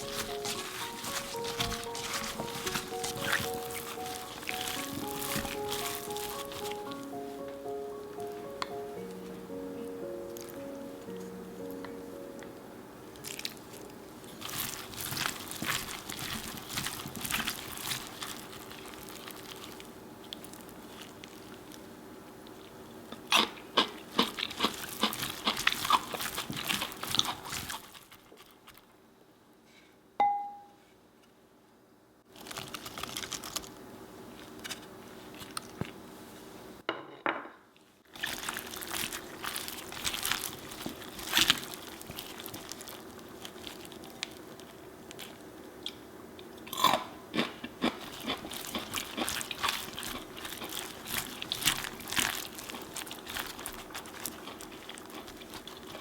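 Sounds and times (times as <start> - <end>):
celery crunching: 0.0 - 28.9, 32.3 - 33.8, 38.1 - 46.0, 46.7 - 56.0
bright ringing clink: 30.2 - 30.8.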